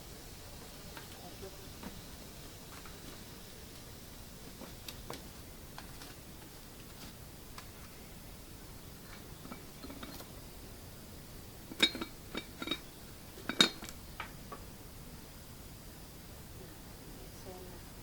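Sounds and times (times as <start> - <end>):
small hard objects clinking: 11.7 - 14.0.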